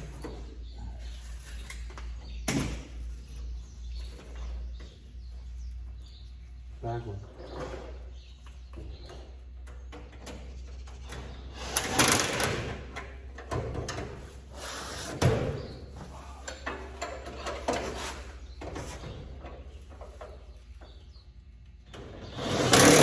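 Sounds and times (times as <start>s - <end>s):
knocks and clanks of repair work: 0.0s - 3.0s, 7.3s - 14.5s, 15.1s - 21.1s, 21.8s - 23.0s.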